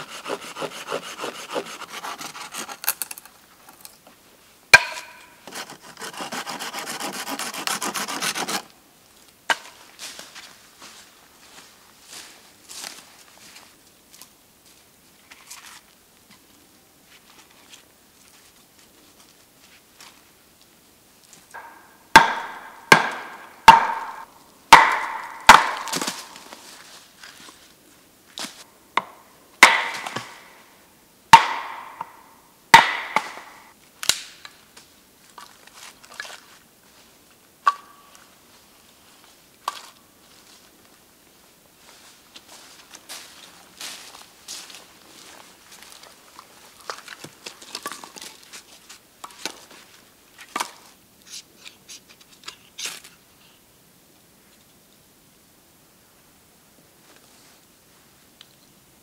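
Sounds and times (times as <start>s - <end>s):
axe chopping wood: 4.8s - 5.2s, 21.6s - 26.4s, 29.0s - 30.6s, 31.3s - 32.2s, 32.8s - 34.3s.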